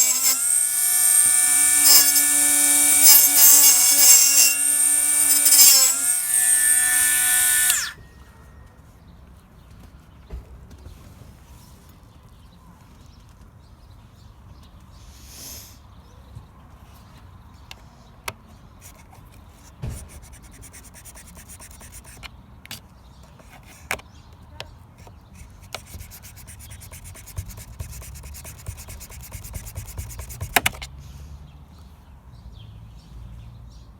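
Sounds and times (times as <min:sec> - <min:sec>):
fast even rasping: 0:00.0 - 0:08.0, 0:19.8 - 0:22.3, 0:25.0 - 0:30.8
sharp clicks and knocks: 0:27.2 - 0:30.9.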